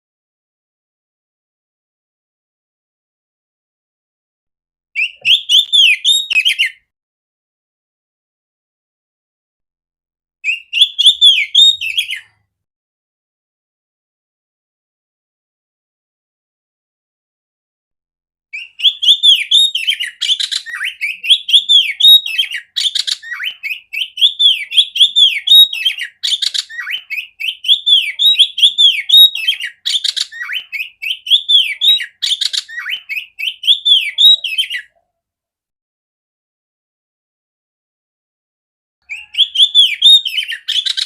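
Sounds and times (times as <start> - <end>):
bird singing whistled song: 5.0 - 6.8, 10.4 - 12.4, 18.6 - 35.0, 39.0 - 41.0.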